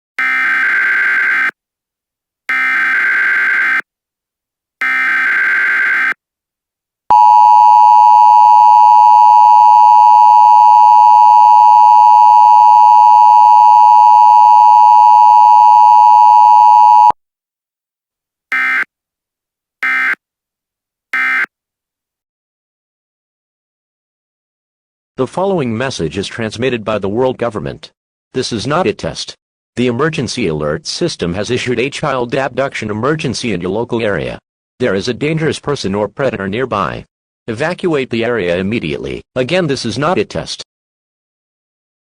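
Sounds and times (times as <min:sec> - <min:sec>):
two-tone attention signal: 0:07.1 - 0:17.2.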